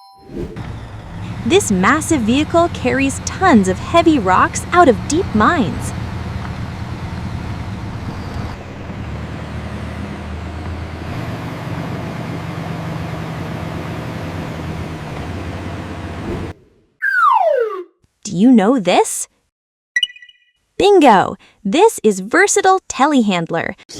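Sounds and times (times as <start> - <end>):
haul truck diesel engine drone: 0.4 - 16.6.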